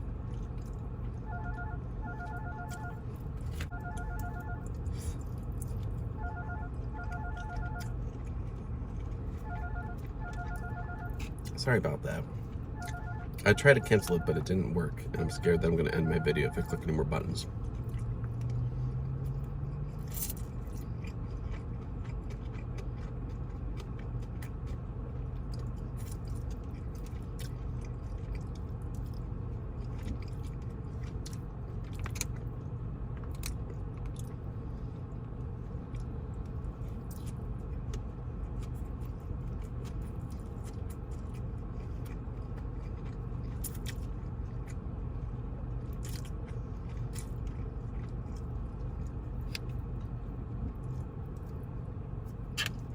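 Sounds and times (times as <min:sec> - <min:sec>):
person chewing food: 0:00.0 - 0:52.9
steady low hum: 0:00.0 - 0:52.9
crunching bites: 0:15.2 - 0:34.4, 0:45.7 - 0:50.1.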